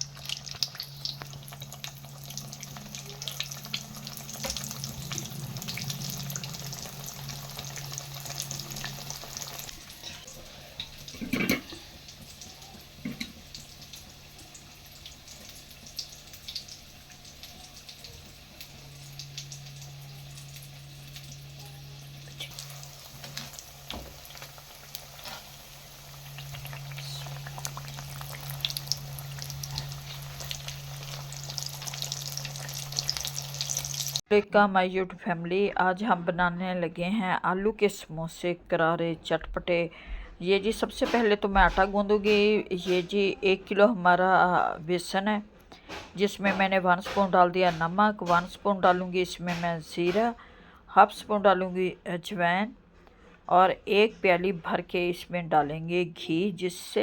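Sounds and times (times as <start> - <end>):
low hum: 0.0 - 11.7, 17.4 - 34.2
food sizzling in hot oil: 0.0 - 34.3.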